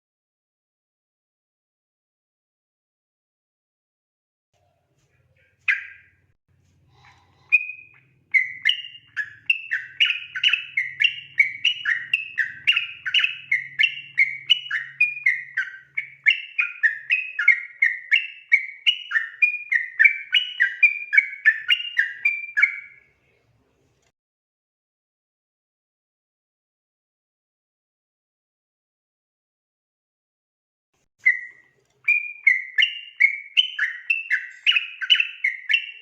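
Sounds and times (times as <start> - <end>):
bulbul singing whistled notes: 5.5 - 6.2, 7.4 - 23.1, 31.2 - 36.0.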